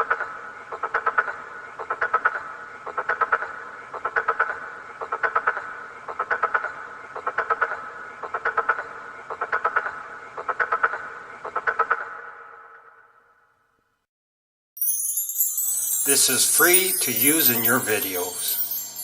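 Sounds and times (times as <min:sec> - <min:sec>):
frog croaking: 0:00.1 - 0:13.1.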